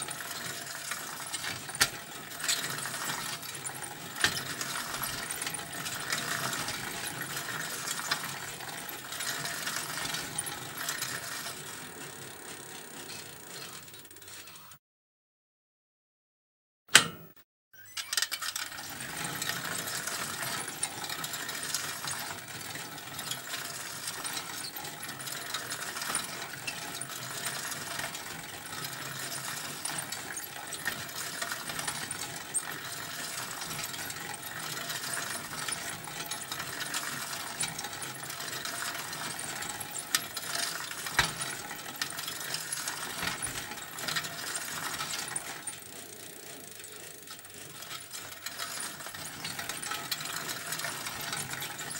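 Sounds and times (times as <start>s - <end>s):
bicycle chain ticking rattle: 0.0s - 14.8s, 18.1s - 51.9s
sharp click: 16.9s - 18.2s.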